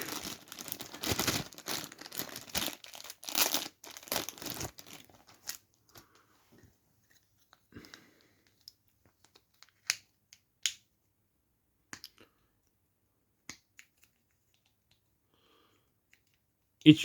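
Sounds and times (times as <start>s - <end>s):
clicks and taps of objects handled: 11.8s - 12.8s, 13.4s - 15.1s, 15.8s - 16.5s.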